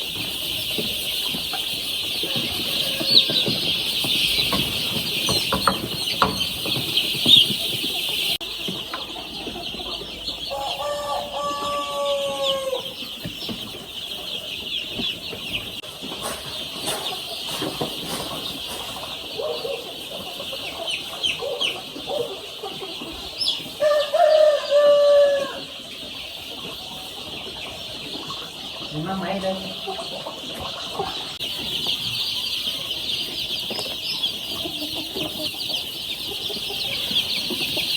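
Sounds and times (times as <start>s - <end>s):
chicks peeping: 0.0s - 37.9s
chicken call: 2.2s - 3.9s, 10.5s - 12.9s.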